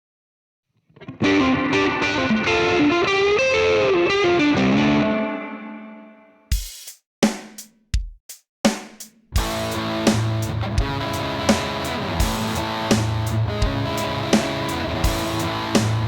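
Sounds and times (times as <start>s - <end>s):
distorted electric guitar blues: 1.0s - 6.0s, 9.4s - 16.0s
drum hit: 8.7s - 13.8s.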